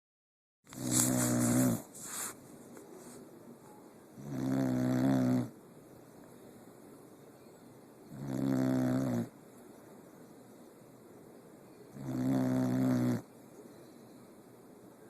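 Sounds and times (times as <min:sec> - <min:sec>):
pet snoring: 0:00.7 - 0:02.1, 0:04.2 - 0:05.6, 0:08.1 - 0:09.4, 0:11.9 - 0:13.3
soft breath: 0:00.8 - 0:03.8.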